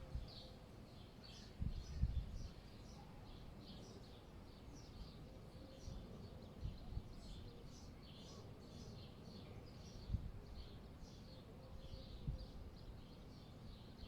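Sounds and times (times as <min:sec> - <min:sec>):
small birds chirping: 0:00.0 - 0:14.0
low wind rumble: 0:01.6 - 0:02.5.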